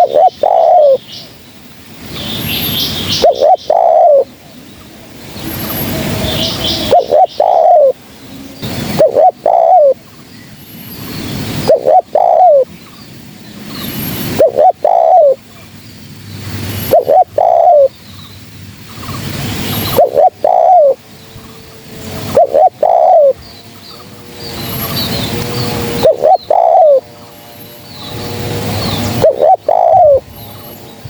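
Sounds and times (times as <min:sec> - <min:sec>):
dove cooing: 0:00.0 - 0:01.2, 0:02.6 - 0:04.4, 0:05.6 - 0:08.0, 0:08.6 - 0:10.0, 0:11.2 - 0:12.7, 0:14.3 - 0:15.4, 0:16.8 - 0:17.9, 0:19.1 - 0:30.4
noisy hiss: 0:00.0 - 0:31.0.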